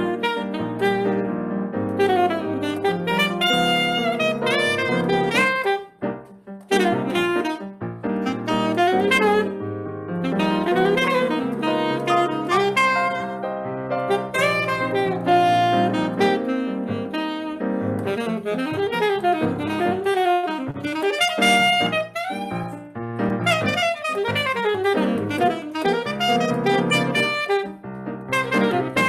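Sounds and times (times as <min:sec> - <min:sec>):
piano accompaniment: 0:00.0 - 0:29.0
saxophone melody: 0:00.0 - 0:29.0.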